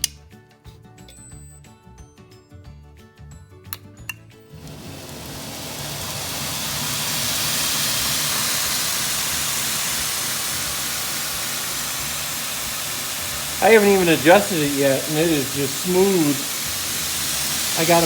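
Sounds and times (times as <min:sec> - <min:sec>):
belt grinder running: 0:04.5 - 0:18.0.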